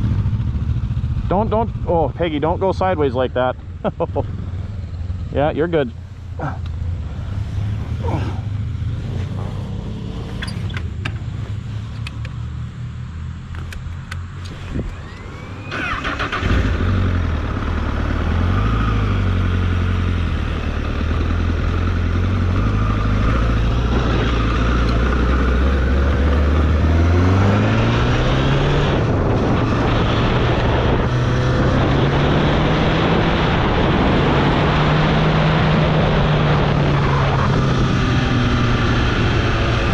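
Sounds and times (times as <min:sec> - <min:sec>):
motorcycle engine running: 0:00.0 - 0:34.4
wind rush: 0:22.3 - 0:39.9.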